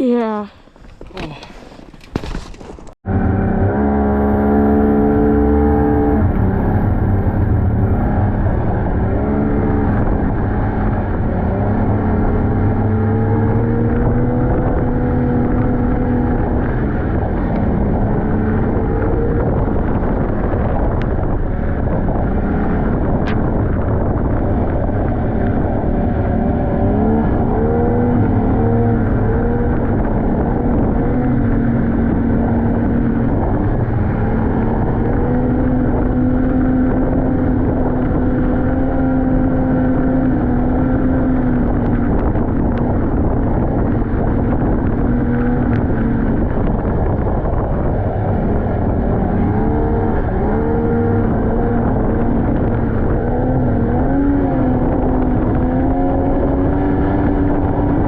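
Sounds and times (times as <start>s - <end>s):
snowmobile engine running: 3.1s - 58.0s
rushing noise on microphone: 12.5s - 58.0s.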